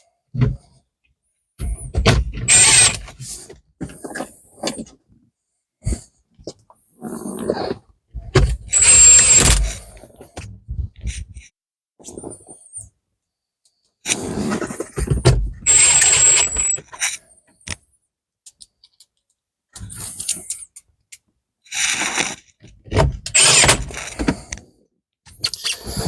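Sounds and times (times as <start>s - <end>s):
plastic rubbing and creaking: 1.6s - 5.0s, 7.4s - 12.8s, 14.1s - 17.2s, 21.7s - 24.5s
short high squeaks: 2.5s - 3.1s, 8.7s - 9.9s, 15.7s - 17.2s, 23.3s - 24.2s.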